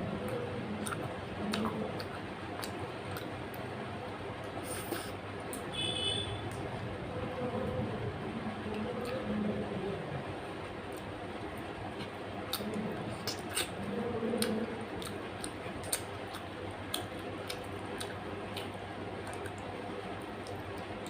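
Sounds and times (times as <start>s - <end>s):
person chewing food: 0.1s - 3.7s, 10.9s - 21.0s.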